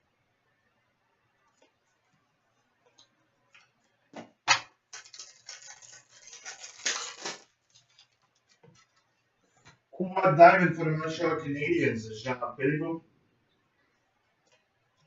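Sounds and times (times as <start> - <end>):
wrapper tearing and crinkling: 4.9 - 9.0.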